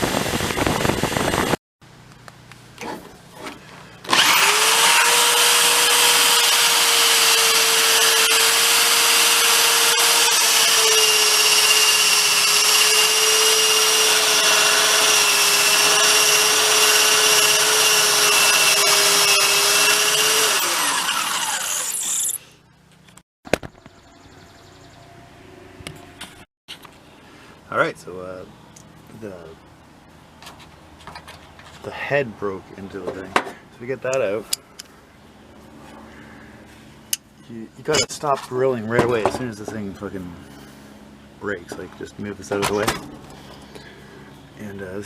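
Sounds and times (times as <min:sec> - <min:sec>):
electric drill drilling into steel: 0:04.1 - 0:22.5.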